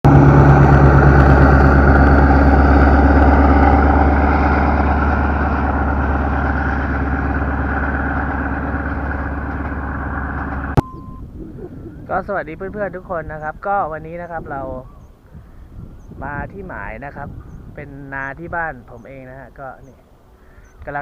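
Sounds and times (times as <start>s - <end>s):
motor engine idling: 0.1s - 12.3s.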